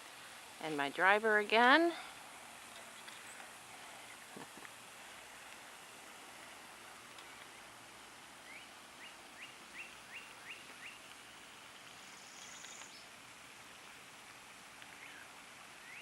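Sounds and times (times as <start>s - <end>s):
outdoor hiss: 0.0s - 16.0s
bird calls: 8.4s - 11.1s, 12.0s - 13.1s, 14.9s - 16.0s.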